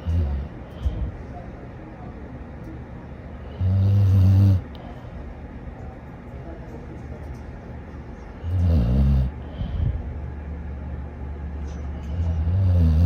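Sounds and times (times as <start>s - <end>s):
dog snoring: 0.0s - 1.0s, 3.6s - 4.7s, 8.4s - 9.7s, 12.1s - 13.0s.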